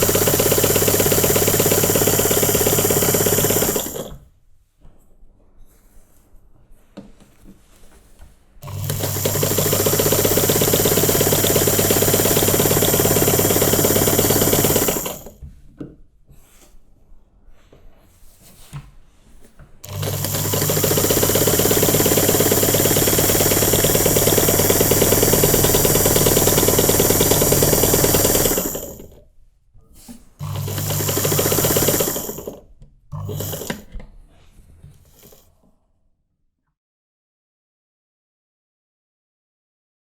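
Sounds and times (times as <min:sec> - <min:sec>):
sewing machine stitching: 0:00.0 - 0:04.3, 0:08.6 - 0:15.4, 0:19.8 - 0:29.2, 0:30.4 - 0:34.1, 0:34.8 - 0:35.5.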